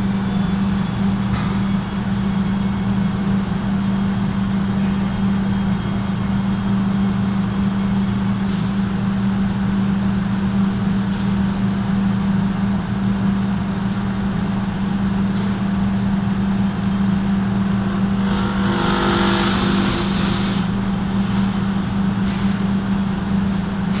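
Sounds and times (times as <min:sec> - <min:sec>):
dryer motor humming: 0:13.7 - 0:23.9.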